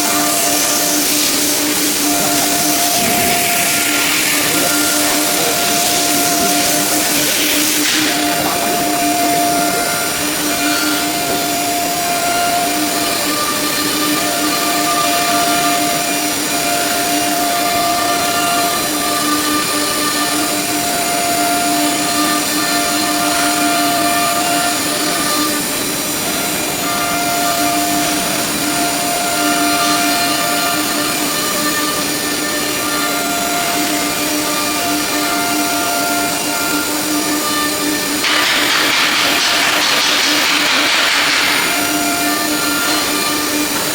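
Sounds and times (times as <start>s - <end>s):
loud hiss: 0.0s - 19.9s, 38.0s - 43.9s
router machine whine: 0.0s - 43.9s.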